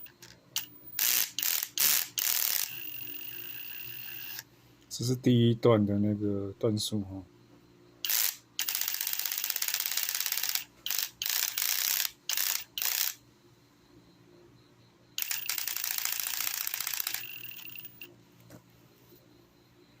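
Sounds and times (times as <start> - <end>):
drill clutch ratcheting clicks: 0.0 - 4.4, 8.1 - 13.2, 15.2 - 18.1.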